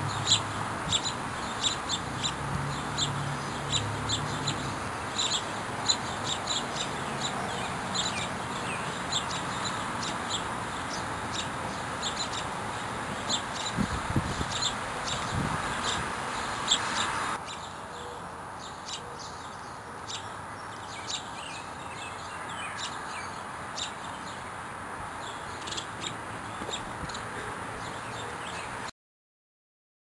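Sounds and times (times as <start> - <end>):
small birds chirping: 0.0 - 28.9.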